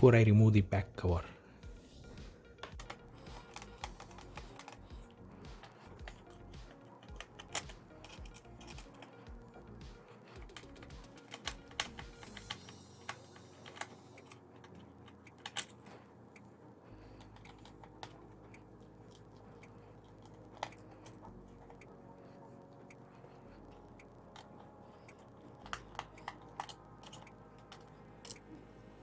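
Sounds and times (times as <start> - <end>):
screwdriver clicks and taps: 2.6 - 15.7.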